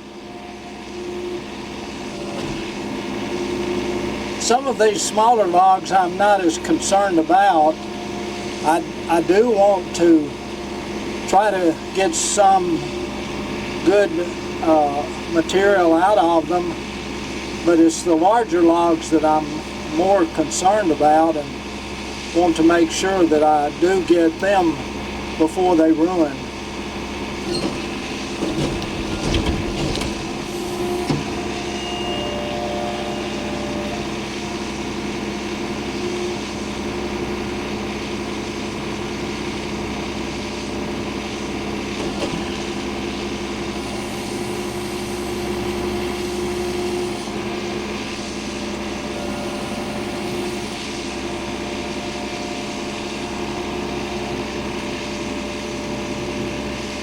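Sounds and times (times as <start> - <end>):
machine engine running: 0.0 - 57.0
knocks and clunks: 27.4 - 31.4, 41.9 - 42.9.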